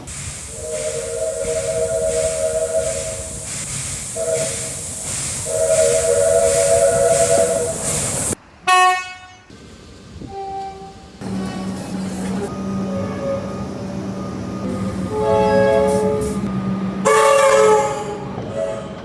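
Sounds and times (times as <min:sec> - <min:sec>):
steam hissing: 0:00.0 - 0:08.4, 0:14.6 - 0:16.5
train toots: 0:00.0 - 0:09.5, 0:10.2 - 0:19.0
steam locomotive chime whistle: 0:00.5 - 0:03.5, 0:04.2 - 0:07.9, 0:12.5 - 0:19.0
low steady horn tone: 0:14.7 - 0:19.0.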